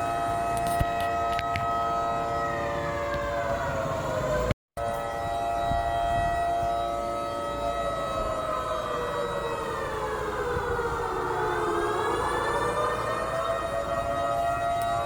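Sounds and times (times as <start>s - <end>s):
warning siren wailing: 0.0s - 15.0s.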